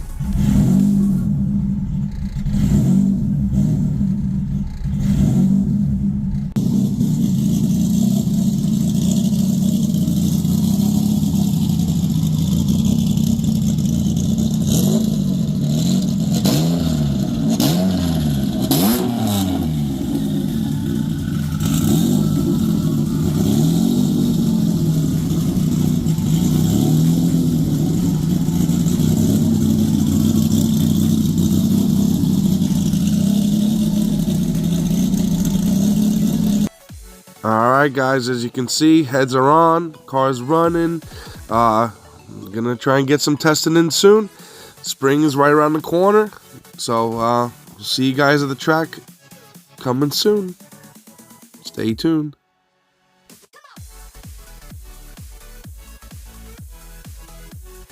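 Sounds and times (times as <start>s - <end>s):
engine revving: 0.0s - 36.7s, 40.0s - 49.2s
car engine idling: 0.0s - 48.9s.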